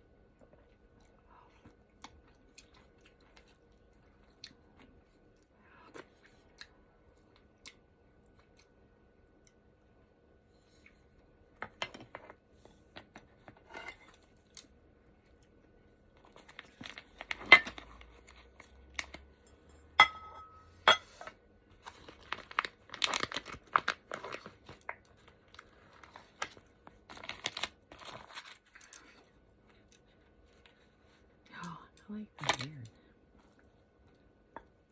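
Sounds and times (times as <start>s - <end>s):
food crackling and crunching: 13.0s - 19.6s, 21.7s - 31.4s.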